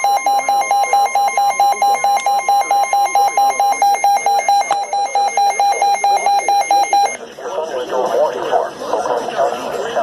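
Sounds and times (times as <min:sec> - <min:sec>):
rapid loud alarm beeping: 0:00.0 - 0:07.2.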